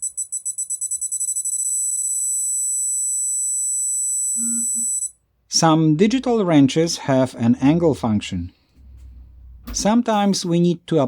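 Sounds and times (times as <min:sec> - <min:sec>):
torque wrench buzzer beeping: 0:00.0 - 0:05.2
steady high-pitched tone: 0:04.4 - 0:05.1.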